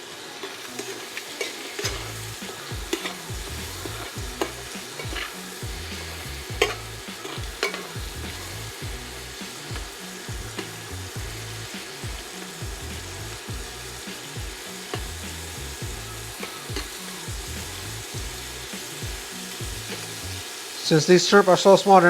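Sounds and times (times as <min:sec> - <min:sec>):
shrimp sizzling in a frying pan: 0:00.0 - 0:22.0.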